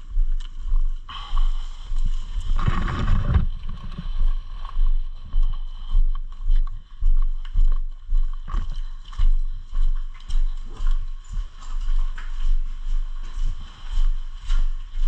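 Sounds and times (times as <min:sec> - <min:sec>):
footsteps walking: 0:00.0 - 0:15.0
gear rubbing against microphone: 0:02.4 - 0:04.0
loud rustle: 0:02.4 - 0:04.1.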